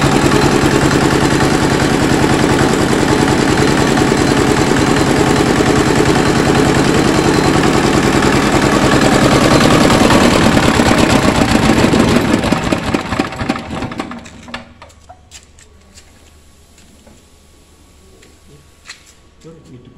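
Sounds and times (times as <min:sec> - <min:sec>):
small engine knocking: 0:00.0 - 0:14.9.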